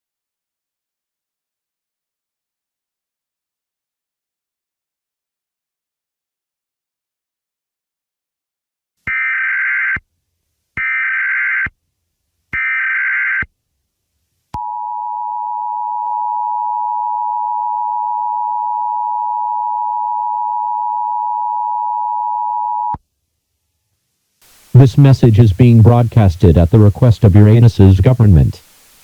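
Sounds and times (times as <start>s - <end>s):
digital header data bursts: 24.6s - 29.0s.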